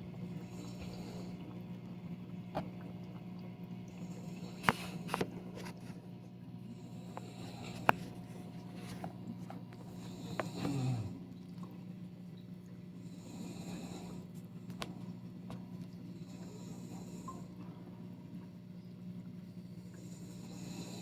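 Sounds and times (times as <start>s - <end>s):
low electrical hum: 0.0s - 21.0s
person snoring softly: 0.3s - 1.5s, 6.7s - 9.1s, 9.8s - 11.2s, 13.0s - 14.4s, 16.1s - 17.6s, 19.9s - 21.0s.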